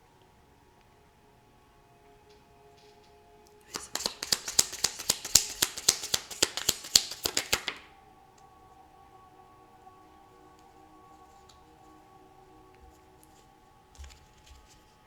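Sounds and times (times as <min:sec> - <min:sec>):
soft background music: 0:00.0 - 0:15.0
cards being shuffled: 0:03.6 - 0:07.9, 0:14.0 - 0:15.0.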